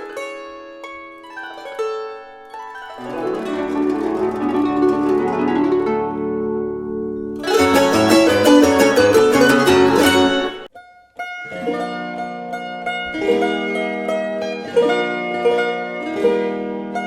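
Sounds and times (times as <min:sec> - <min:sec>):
plucked strings music: 0:00.0 - 0:17.0.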